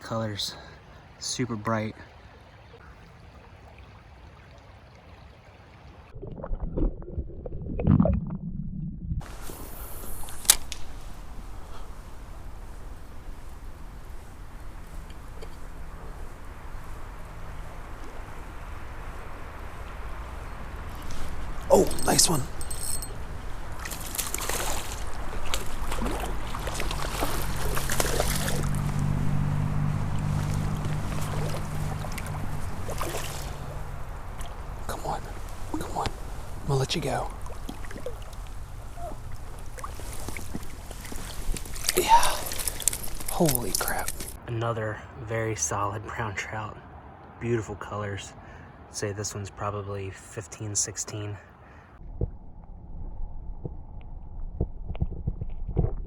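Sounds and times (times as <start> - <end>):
faint creek flow: 0.0 - 6.2, 9.2 - 51.9
muffled water sloshing and gurgling: 2.0 - 21.7, 22.6 - 44.4
low steady hum: 6.6 - 46.3.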